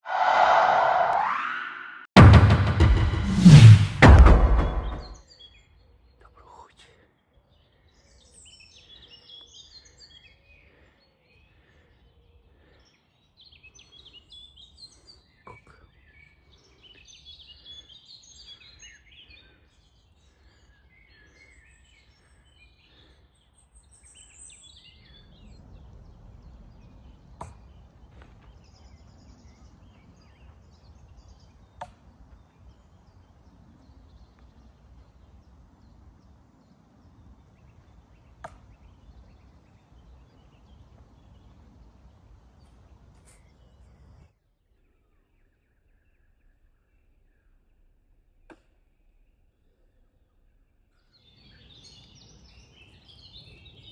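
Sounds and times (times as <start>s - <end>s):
steady low rumble: 0.1s - 5.1s.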